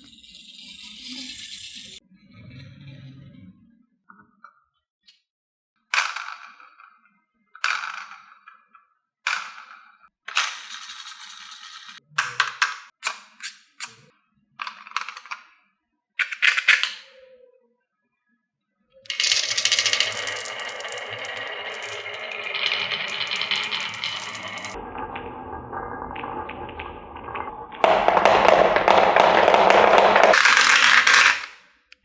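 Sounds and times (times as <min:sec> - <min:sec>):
marbles clacking on wood: 0:07.6 - 0:08.7, 0:09.3 - 0:13.2, 0:19.1 - 0:24.8, 0:26.8 - 0:31.6
marbles rolling rattle: 0:10.4 - 0:12.0, 0:19.1 - 0:31.6.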